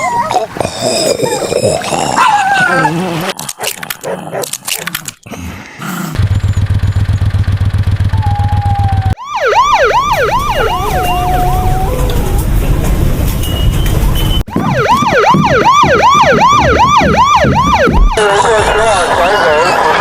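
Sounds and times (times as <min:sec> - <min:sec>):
vehicle engine running: 0:06.2 - 0:09.2
police sirens wailing: 0:08.2 - 0:13.0, 0:14.4 - 0:20.0.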